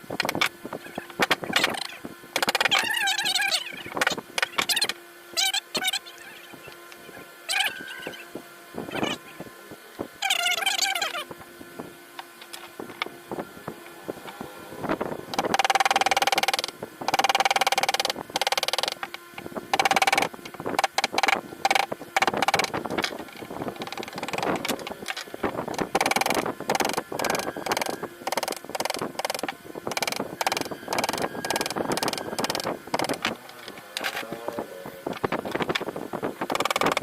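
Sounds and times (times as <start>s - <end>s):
carving tools knocking on wood: 19.8s - 22.7s, 25.8s - 33.3s, 36.5s - 37.0s
ringing metallic tone: 30.3s - 32.9s.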